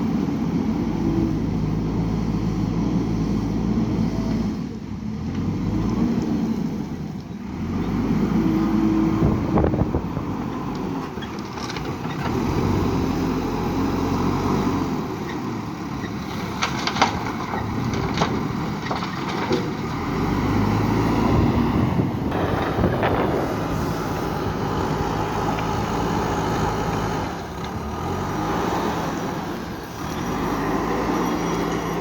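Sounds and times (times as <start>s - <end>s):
diesel engine revving: 0.0s - 32.0s
sharp clanks and rattles: 16.0s - 19.9s.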